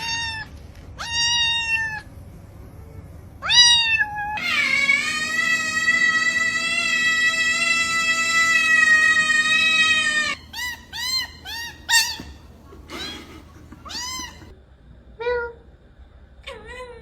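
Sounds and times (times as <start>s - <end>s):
cat meowing: 4.4s - 14.5s.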